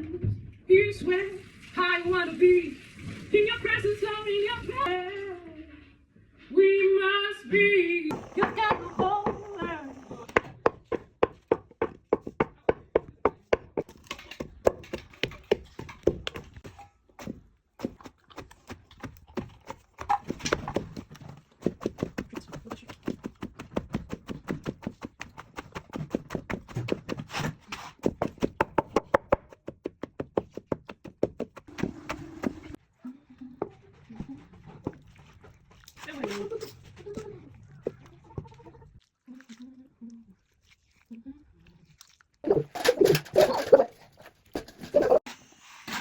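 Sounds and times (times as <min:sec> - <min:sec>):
knocking of food being chopped: 0:08.1 - 0:16.6, 0:17.2 - 0:27.3, 0:28.0 - 0:32.7.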